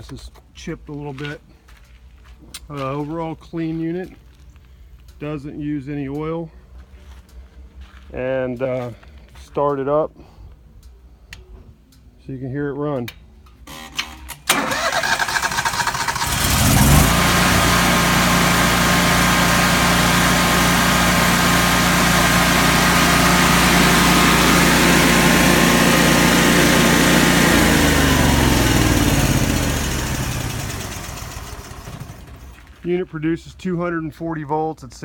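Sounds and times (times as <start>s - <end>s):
engine winding down: 13.7s - 32.9s
generator engine running: 13.7s - 33.1s.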